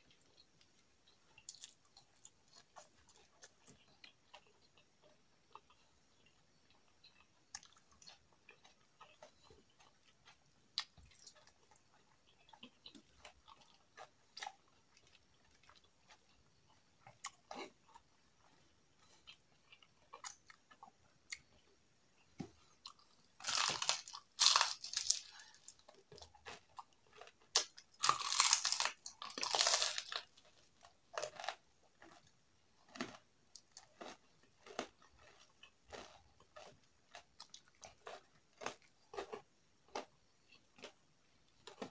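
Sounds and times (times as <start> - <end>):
soft chewing: 0.0 - 41.9
loud crunching of fried chicken: 22.9 - 40.1.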